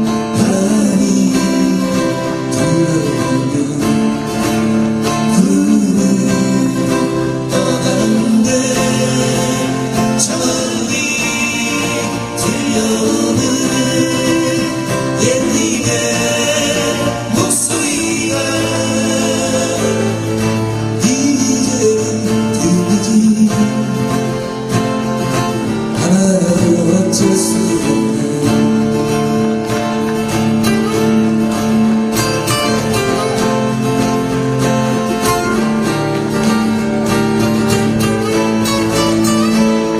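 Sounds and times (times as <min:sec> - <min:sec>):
man singing a folk ballad: 0:00.0 - 0:24.6, 0:25.8 - 0:29.5
strummed acoustic guitar: 0:00.0 - 0:39.9.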